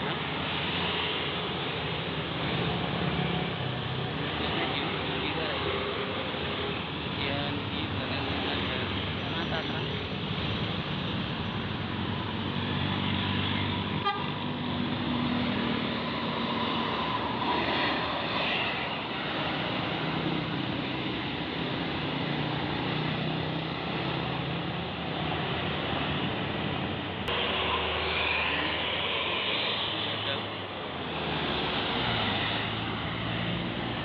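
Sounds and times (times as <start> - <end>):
bus diesel engines pulling uphill: 0.0 - 34.0
bus horn toots: 14.0 - 14.4.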